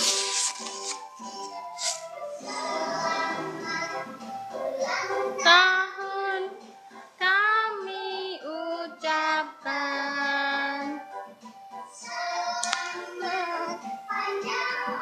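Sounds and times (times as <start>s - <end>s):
child singing: 2.4s - 4.1s, 4.8s - 6.6s, 7.2s - 11.0s, 12.0s - 15.0s.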